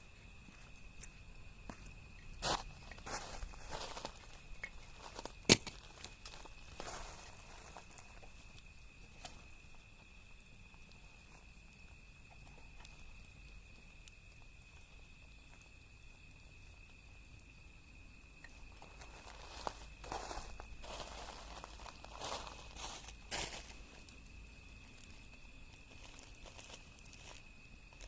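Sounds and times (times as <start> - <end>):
small wood fire crackling: 0.0 - 28.0
rustling and shuffling: 18.8 - 23.9.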